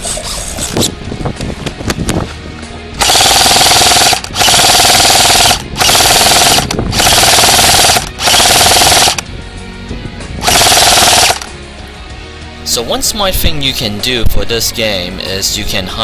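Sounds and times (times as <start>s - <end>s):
airsoft gun firing full auto: 3.0s - 9.2s, 10.4s - 11.5s.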